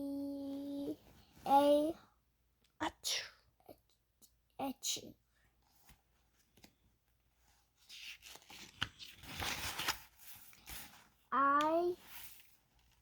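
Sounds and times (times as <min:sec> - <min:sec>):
paper rustling and crinkling: 0:07.8 - 0:11.2
book page turning: 0:07.8 - 0:13.0.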